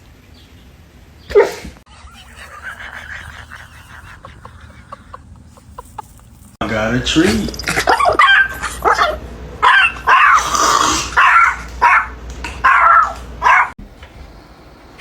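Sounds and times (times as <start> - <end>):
dog barking and yipping: 2.2 - 6.6, 7.5 - 10.5, 11.1 - 13.8.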